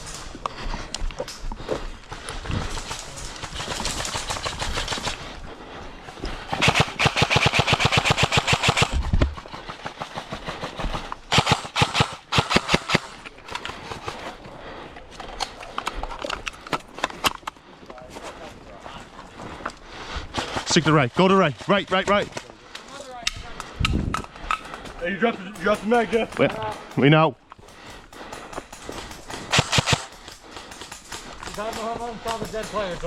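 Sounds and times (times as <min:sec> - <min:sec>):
airsoft rifles firing: 0:02.7 - 0:05.2, 0:06.5 - 0:14.4, 0:27.7 - 0:32.8.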